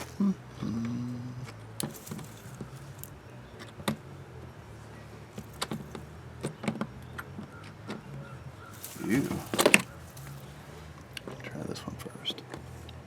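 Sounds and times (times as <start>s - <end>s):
metal hand tools clinking: 8.8s - 10.6s.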